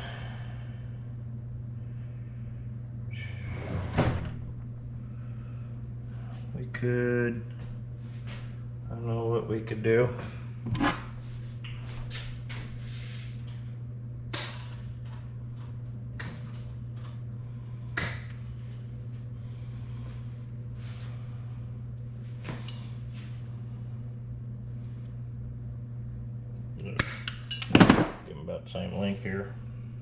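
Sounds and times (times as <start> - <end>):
steady low hum: 0.0 - 30.0
tools clicking and scraping: 27.0 - 27.8.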